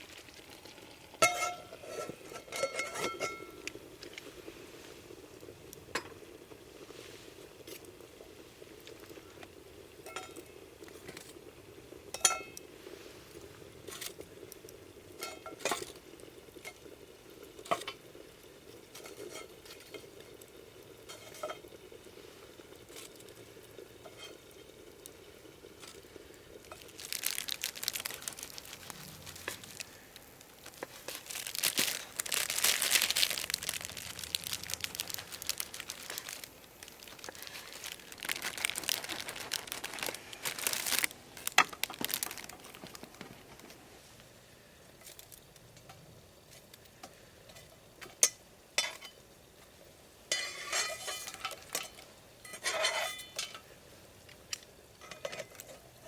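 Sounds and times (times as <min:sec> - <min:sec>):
crackling and rustling: 0:00.0 - 0:44.3
cookware clinking: 0:01.2 - 0:03.6, 0:50.3 - 0:53.7.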